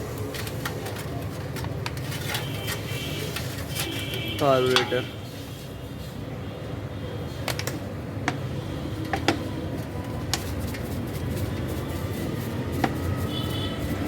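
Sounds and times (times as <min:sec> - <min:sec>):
sharp clicks of small parts: 0:07.4 - 0:08.4.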